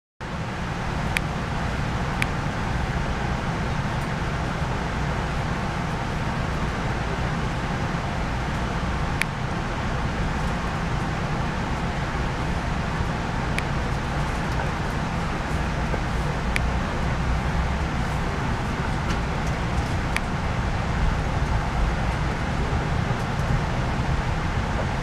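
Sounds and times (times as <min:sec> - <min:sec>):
train rumbling inside coach: 0:00.2 - 0:25.0.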